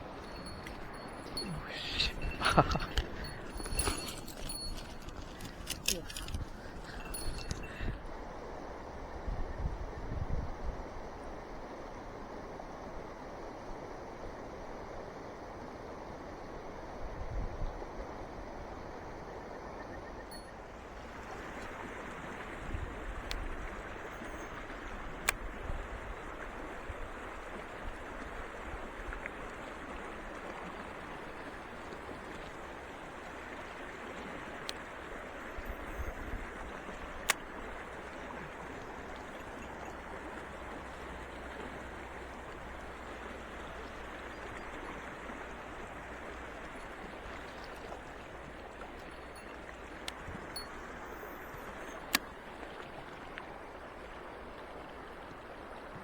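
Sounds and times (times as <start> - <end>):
stream rushing over rocks: 0.0 - 8.0.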